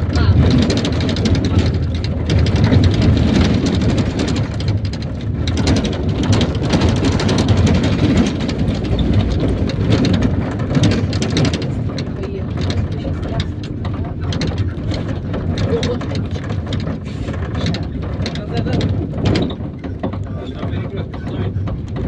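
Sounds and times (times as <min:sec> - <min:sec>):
body rattling and clatter: 0:00.0 - 0:22.0
bus engine and road rumble: 0:00.0 - 0:22.0.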